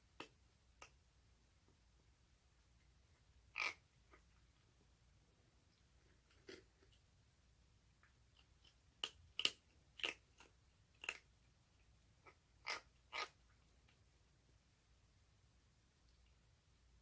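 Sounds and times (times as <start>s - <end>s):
kitten crunching food: 6.0s - 7.1s, 7.9s - 14.0s.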